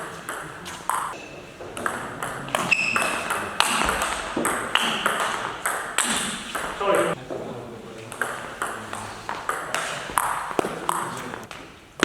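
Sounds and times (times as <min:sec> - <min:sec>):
table tennis ball rally: 0:00.0 - 0:11.6.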